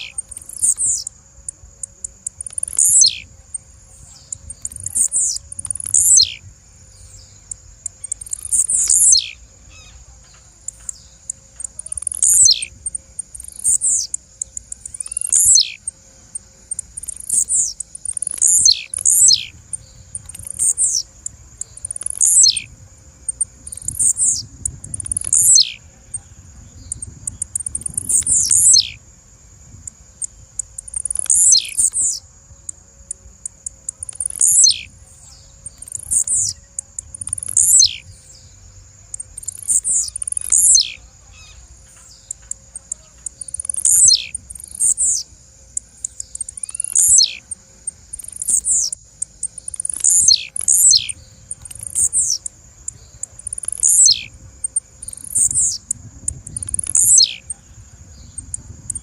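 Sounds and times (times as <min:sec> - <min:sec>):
bird giving short high calls: 0:04.7 - 0:06.4, 0:13.5 - 0:15.9, 0:46.4 - 0:47.5.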